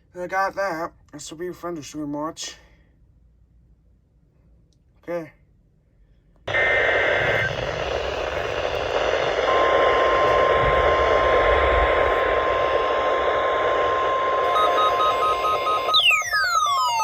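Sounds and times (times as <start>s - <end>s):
static hiss: 6.5s - 16.0s
high tone sweeping downward: 6.5s - 17.0s
pulsing electronic beeps: 6.5s - 17.0s
steady warning alarm tone: 6.5s - 17.0s.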